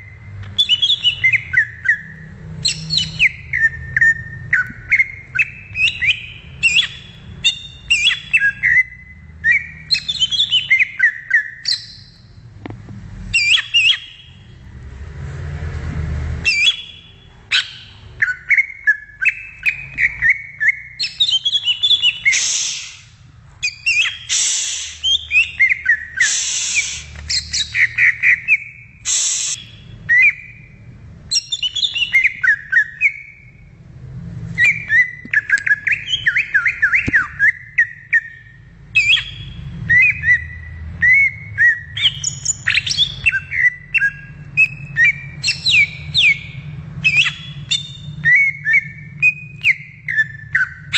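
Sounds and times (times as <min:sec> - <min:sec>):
bird singing whistles and trills: 0:00.0 - 0:12.4, 0:13.3 - 0:14.6, 0:16.4 - 0:33.7, 0:34.5 - 0:50.9
harsh rasping bird notes: 0:15.2 - 0:30.5.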